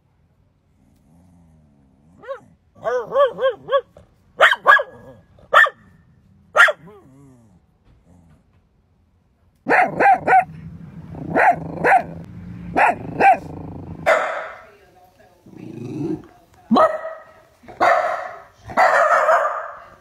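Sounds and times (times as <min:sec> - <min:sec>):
low steady hum: 0:00.0 - 0:17.9
dog barking sharply: 0:02.3 - 0:05.9, 0:06.6 - 0:06.9, 0:09.7 - 0:10.5, 0:11.3 - 0:14.7, 0:16.7 - 0:19.9.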